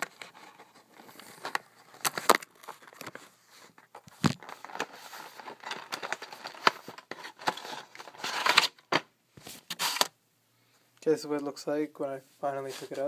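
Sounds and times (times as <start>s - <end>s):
packaging crinkling and tearing: 0.0s - 3.3s, 4.0s - 8.9s.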